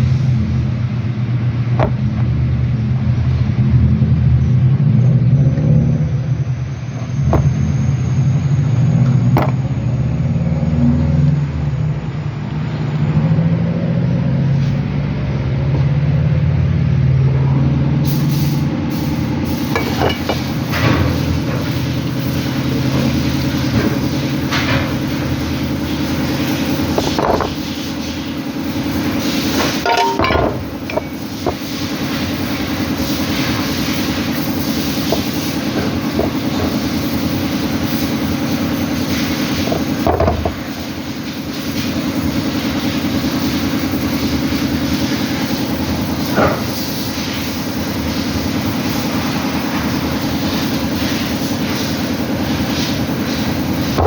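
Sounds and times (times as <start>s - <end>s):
engine knocking clatter: 30.9s - 54.0s.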